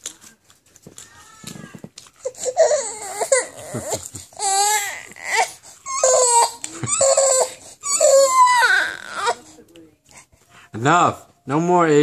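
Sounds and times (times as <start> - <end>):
toddler crying and whining: 1.1 - 9.6.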